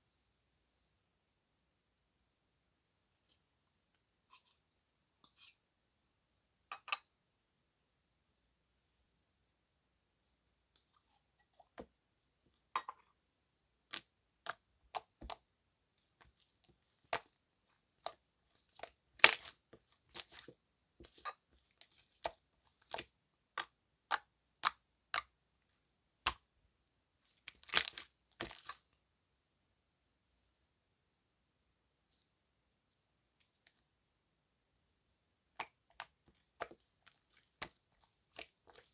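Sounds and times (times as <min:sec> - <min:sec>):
slime popping and crackling: 0:18.8 - 0:20.4, 0:27.5 - 0:28.8.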